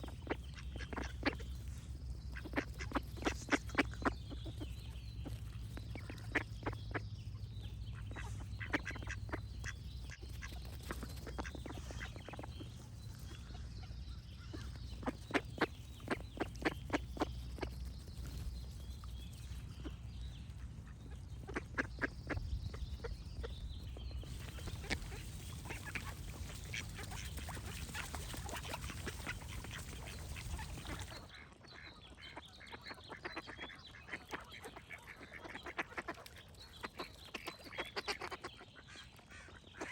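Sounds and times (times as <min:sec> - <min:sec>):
ducks quacking: 0:00.0 - 0:17.8, 0:19.7 - 0:39.9
low steady rumble: 0:00.0 - 0:31.3.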